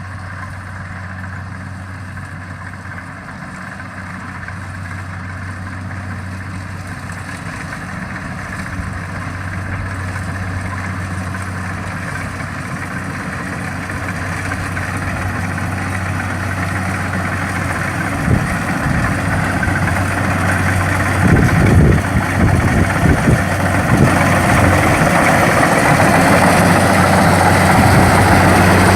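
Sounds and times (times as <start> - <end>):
harvester diesel engine running: 0.0 - 28.9
low rumbling thumps: 17.5 - 28.9.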